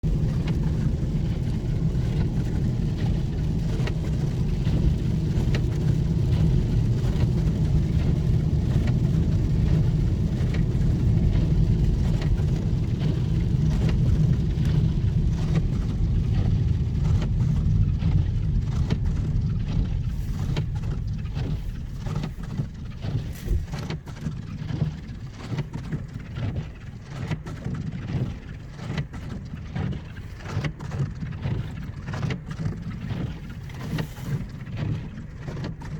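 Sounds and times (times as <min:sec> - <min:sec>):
road and engine noise: 0:00.0 - 0:26.7.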